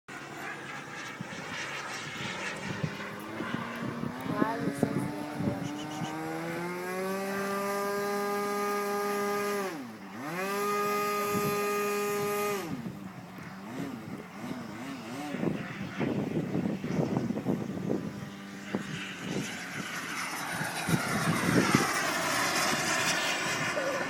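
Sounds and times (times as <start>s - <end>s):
model airplane motor and propeller: 0.1s - 24.0s.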